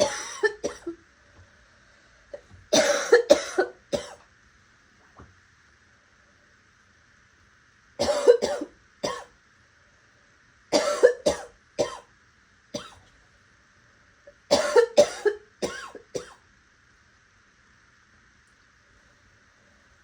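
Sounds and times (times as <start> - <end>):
person coughing: 0.0 - 1.0, 2.7 - 4.2, 8.0 - 9.3, 10.8 - 12.0, 14.5 - 16.4.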